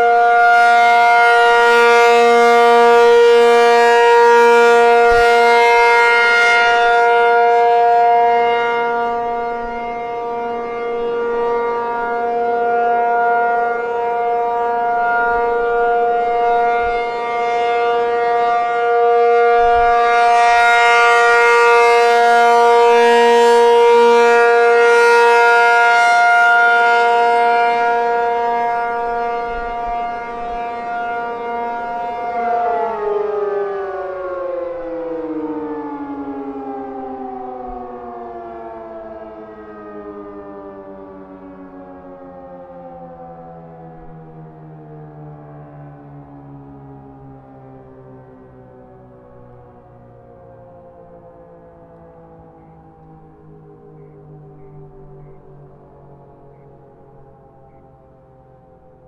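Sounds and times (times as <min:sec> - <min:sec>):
warning siren steady tone: 0:00.0 - 0:59.0.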